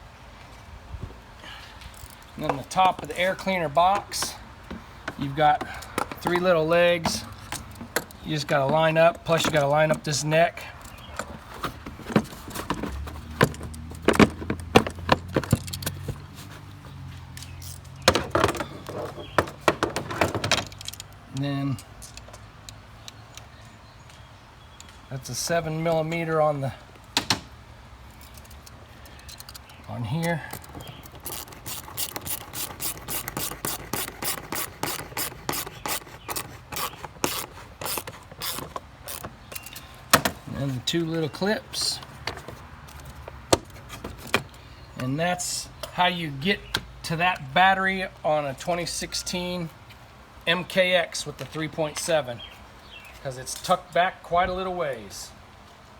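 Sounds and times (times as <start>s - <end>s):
socket ratchet clicking: 28.2s - 39.9s.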